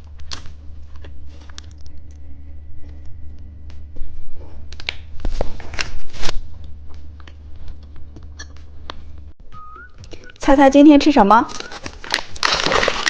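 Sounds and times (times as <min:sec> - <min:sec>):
steady low hum: 0:00.0 - 0:13.0
plastic packaging rustling: 0:04.7 - 0:06.4, 0:11.2 - 0:13.0.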